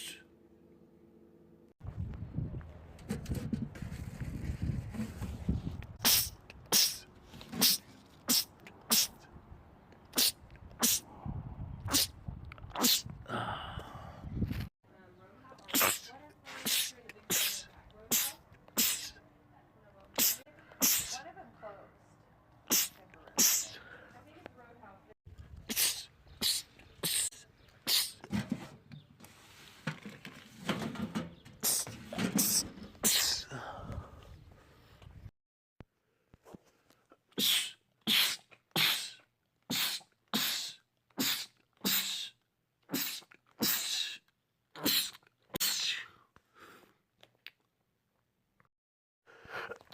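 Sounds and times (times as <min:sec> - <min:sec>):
man sneezing: 0:07.6 - 0:09.2, 0:10.2 - 0:11.0, 0:12.8 - 0:13.5, 0:15.8 - 0:19.2, 0:20.2 - 0:21.2, 0:22.7 - 0:23.8, 0:37.4 - 0:44.2, 0:44.8 - 0:46.1.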